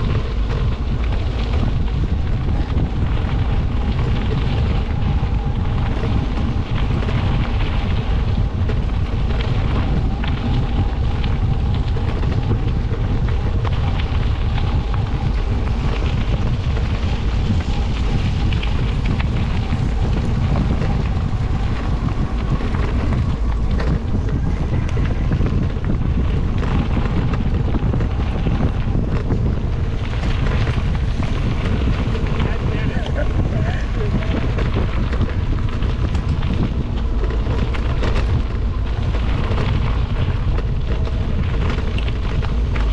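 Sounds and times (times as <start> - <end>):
wind buffeting microphone: 0.0 - 42.9.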